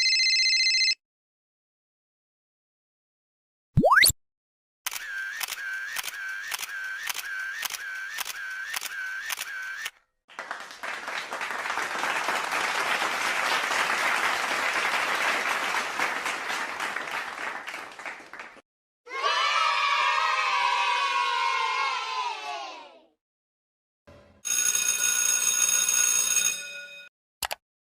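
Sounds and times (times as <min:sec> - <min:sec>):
camera shutter clicks: 0:04.9 - 0:09.9
applause-like noise: 0:10.3 - 0:18.6.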